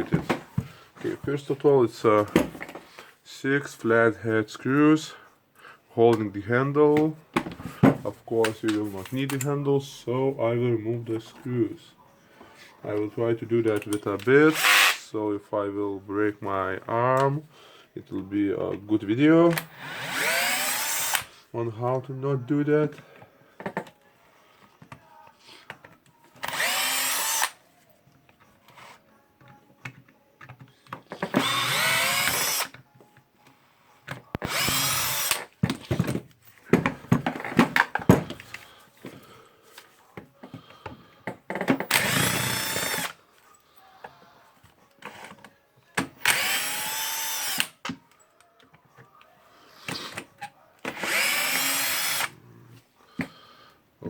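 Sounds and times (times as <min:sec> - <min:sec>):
power drill whining: 0:14.5 - 0:15.0, 0:19.6 - 0:21.3, 0:26.4 - 0:27.6, 0:31.3 - 0:32.7, 0:34.4 - 0:35.5, 0:41.8 - 0:43.2, 0:46.2 - 0:47.7, 0:50.8 - 0:52.3.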